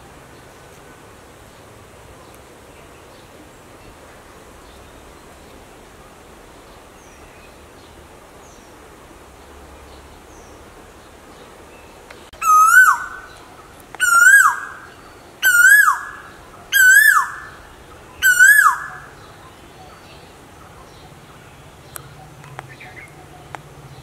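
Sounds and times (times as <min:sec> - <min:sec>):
koel calling: 0:12.4 - 0:13.4, 0:14.0 - 0:19.2.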